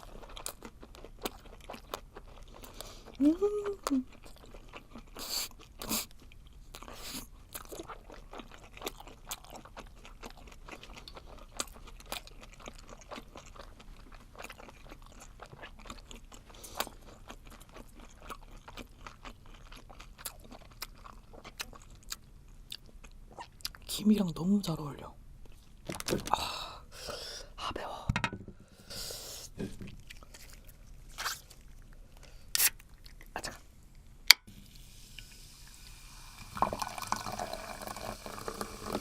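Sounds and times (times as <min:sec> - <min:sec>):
chewing and crunching: 0:00.0 - 0:24.0, 0:29.6 - 0:33.5.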